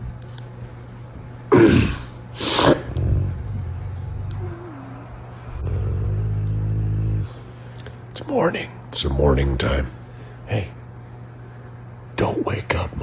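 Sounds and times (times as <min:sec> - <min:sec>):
dog snoring: 0:02.5 - 0:07.5.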